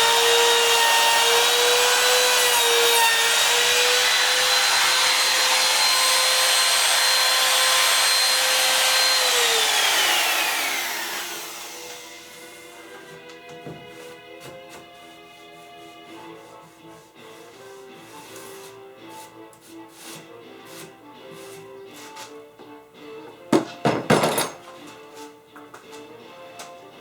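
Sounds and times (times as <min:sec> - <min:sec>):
electric power tool motor: 0:03.4 - 0:12.3.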